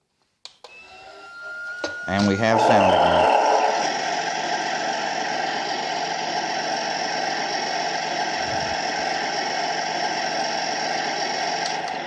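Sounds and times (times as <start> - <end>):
simulated tank engine idling: 2.8 - 12.0.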